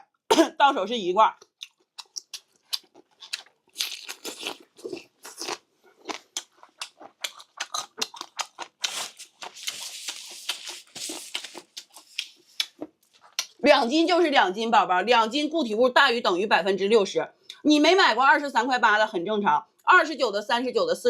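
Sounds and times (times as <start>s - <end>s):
crunching and chewing: 1.4s - 13.6s.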